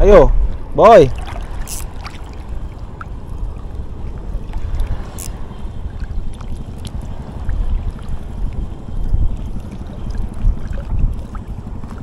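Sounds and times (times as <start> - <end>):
wind buffeting microphone: 0.0 - 12.0
faint ticks: 4.8 - 5.4.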